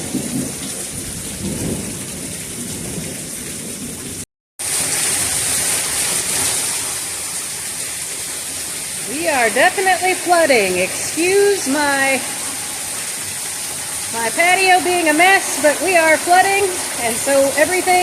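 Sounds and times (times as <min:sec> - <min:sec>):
low thunder rumble: 0:00.0 - 0:04.2, 0:09.0 - 0:18.0
heavy rain pouring: 0:00.0 - 0:18.0.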